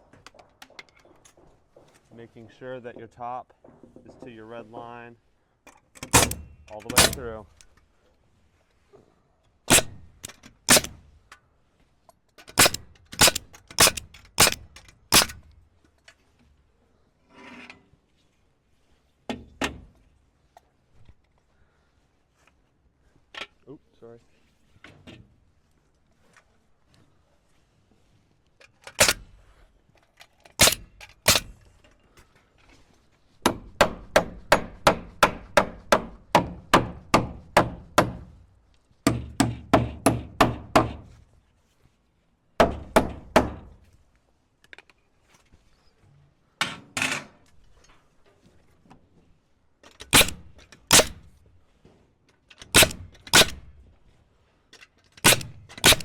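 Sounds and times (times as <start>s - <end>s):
hammer driving nails into wood: 6.0s - 7.3s, 9.7s - 11.0s, 12.4s - 15.5s, 28.9s - 29.3s, 30.6s - 31.6s, 33.4s - 38.3s, 39.1s - 41.0s, 42.6s - 43.8s, 50.0s - 51.3s, 52.6s - 53.7s, 55.1s - 56.0s.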